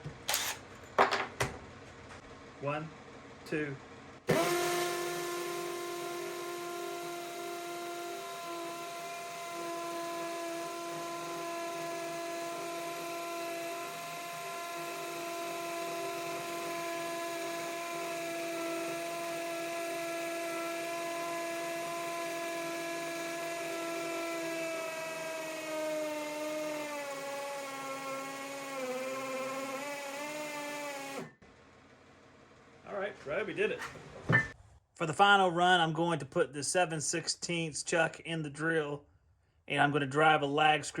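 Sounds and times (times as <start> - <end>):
hammer drill boring into concrete: 0.3 - 0.6, 4.3 - 31.4.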